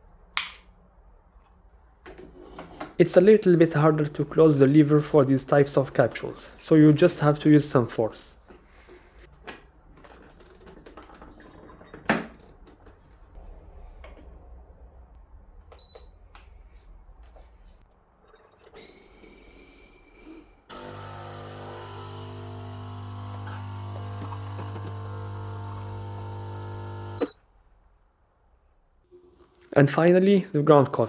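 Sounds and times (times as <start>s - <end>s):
coffee machine pump humming: 20.7s - 27.4s.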